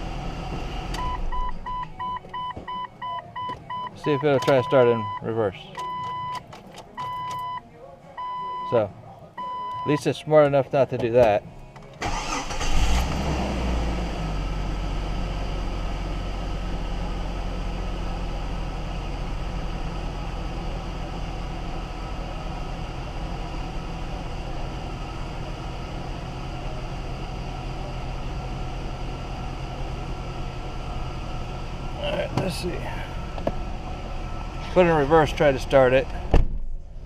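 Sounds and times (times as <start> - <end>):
car engine idling: 0.0 - 3.0, 12.0 - 37.0.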